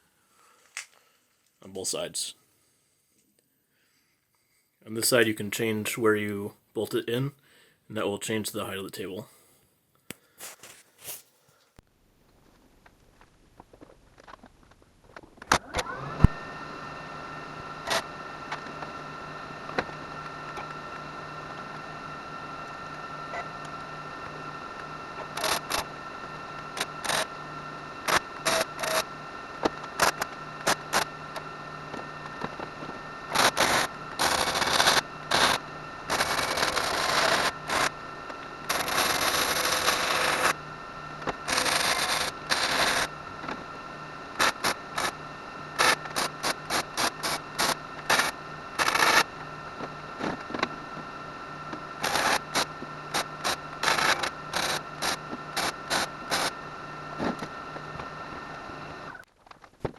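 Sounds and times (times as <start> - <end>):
welder crackling: 15.4 - 59.8.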